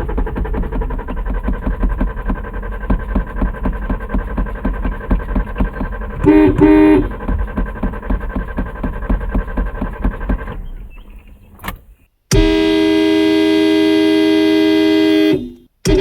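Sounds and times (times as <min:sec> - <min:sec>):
car engine cranking: 0:00.0 - 0:16.0
car horn blast: 0:06.2 - 0:07.6, 0:12.3 - 0:16.0
click: 0:11.6 - 0:12.6.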